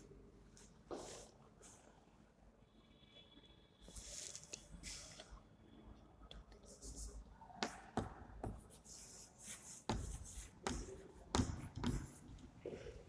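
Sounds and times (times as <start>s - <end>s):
writing tip tapping a board: 9.9s - 12.2s.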